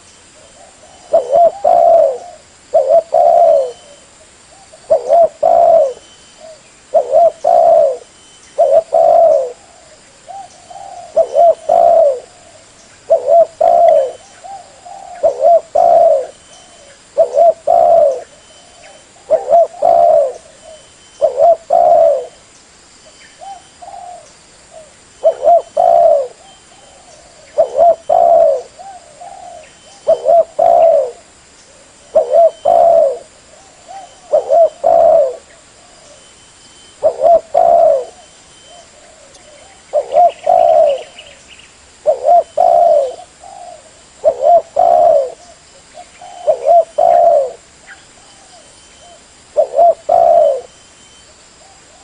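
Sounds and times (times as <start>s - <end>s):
dove cooing: 0.0s - 22.4s, 23.4s - 41.4s, 42.0s - 52.0s.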